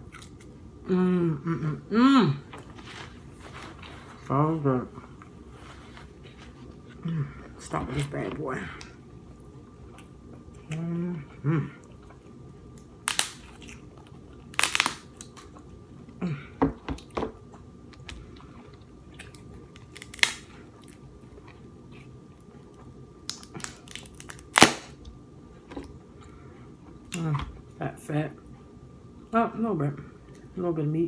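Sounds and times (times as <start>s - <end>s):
crab shells cracking: 12.8s - 13.8s, 14.5s - 15.5s, 19.3s - 21.0s, 23.2s - 25.0s
chewing: 17.0s - 24.1s.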